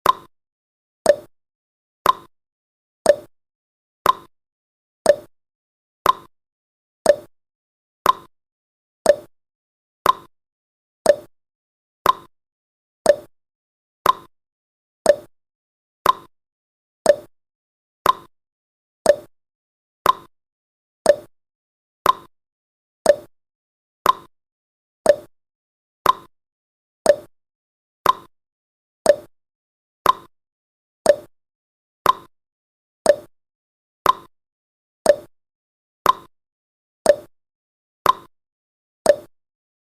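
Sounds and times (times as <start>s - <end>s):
timer ticking: 0.0s - 0.3s, 1.1s - 1.3s, 2.0s - 2.3s, 3.1s - 3.3s, 4.0s - 4.3s, 5.1s - 5.3s, 6.0s - 6.3s, 7.1s - 7.3s, 8.0s - 8.3s, 9.1s - 9.3s, 10.0s - 10.3s, 11.0s - 11.3s, 12.0s - 12.3s, 13.0s - 13.3s, 14.0s - 14.3s, 15.1s - 15.3s, 16.0s - 16.3s, 17.1s - 17.3s, 18.0s - 18.3s, 19.1s - 19.3s, 20.0s - 20.3s, 21.1s - 21.3s, 22.0s - 22.3s, 23.0s - 23.3s, 24.0s - 24.3s, 25.0s - 25.3s, 26.0s - 26.3s, 27.1s - 27.3s, 28.0s - 28.3s, 29.1s - 29.3s, 30.0s - 30.3s, 31.1s - 31.3s, 32.1s - 32.3s, 33.1s - 33.3s, 34.1s - 34.3s, 35.1s - 35.3s, 36.1s - 36.3s, 37.1s - 37.3s, 38.1s - 38.3s, 39.1s - 39.3s.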